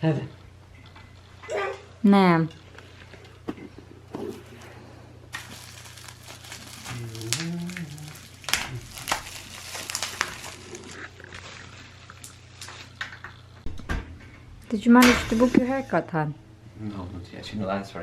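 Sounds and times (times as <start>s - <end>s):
steady low hum: 0.0s - 18.0s
small objects clicking and knocking: 5.3s - 10.7s.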